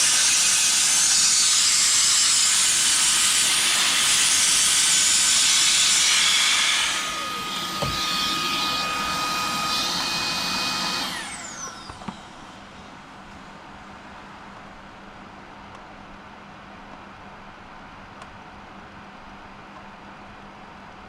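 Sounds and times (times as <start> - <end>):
electric air tool whining: 0.0 - 12.8
click: 15.7 - 15.9, 18.2 - 18.4.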